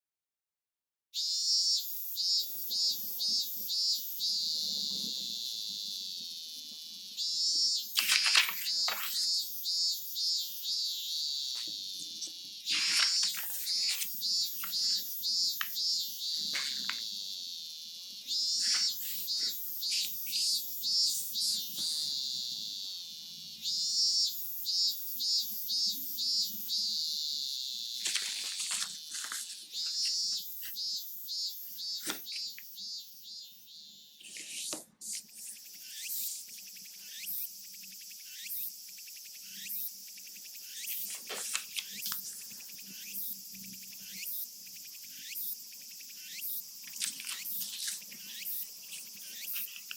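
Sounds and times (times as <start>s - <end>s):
cicadas buzzing: 1.2s - 49.9s.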